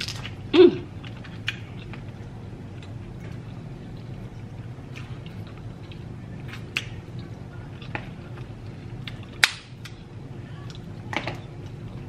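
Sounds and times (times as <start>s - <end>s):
low steady hum: 0.0s - 12.0s
crab shells snapping: 6.5s - 7.0s, 9.0s - 10.0s.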